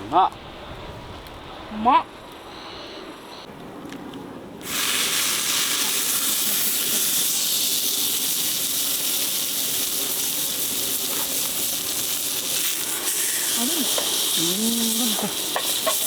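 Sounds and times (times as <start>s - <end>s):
meat sizzling on a grill: 4.6s - 16.0s.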